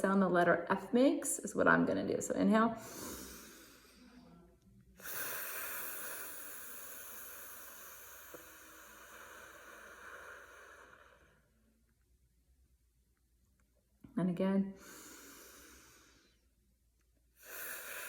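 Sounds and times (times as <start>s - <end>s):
long hissing exhale: 2.8s - 4.2s, 5.0s - 11.5s, 14.8s - 16.5s, 17.4s - 18.0s
woman breathing in quietly: 2.8s - 4.4s, 5.0s - 11.6s, 14.8s - 16.6s, 17.4s - 18.0s.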